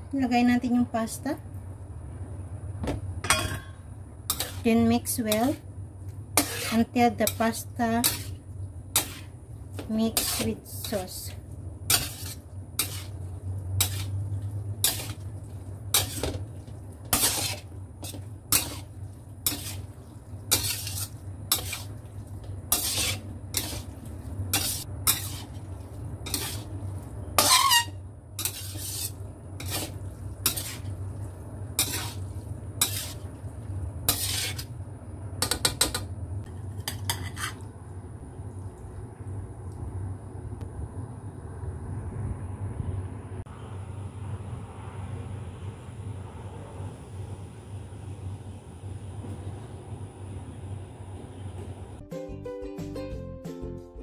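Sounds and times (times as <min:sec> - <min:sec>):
utensil scraping a pan: 0:04.3 - 0:05.6, 0:06.4 - 0:13.2, 0:13.8 - 0:26.8, 0:27.4 - 0:31.0, 0:31.8 - 0:33.3, 0:34.0 - 0:34.8, 0:35.4 - 0:37.6
short squeak: 0:27.4 - 0:28.0
low hum: 0:37.7 - 0:52.0.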